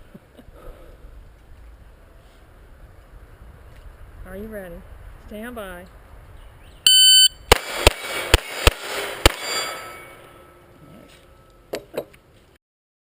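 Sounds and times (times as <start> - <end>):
shot timer beep: 6.9 - 7.4
pistol shots: 7.4 - 10.0
steel targets ringing: 7.6 - 11.7.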